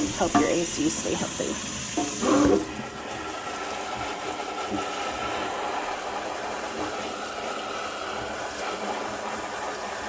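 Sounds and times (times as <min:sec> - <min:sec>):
sink sprayer water spraying: 0:00.0 - 0:10.0.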